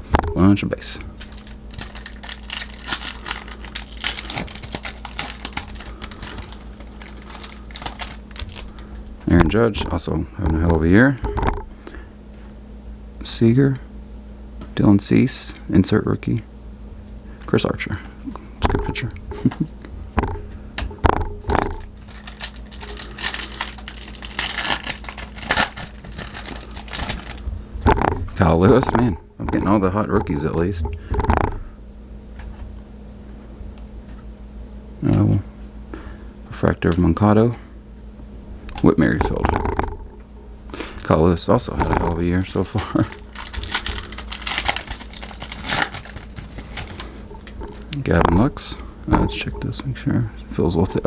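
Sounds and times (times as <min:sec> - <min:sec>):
faint low hum: 0:00.0 - 0:51.0
card pack crinkling and rustling: 0:01.0 - 0:09.2, 0:21.7 - 0:27.5, 0:41.8 - 0:47.9.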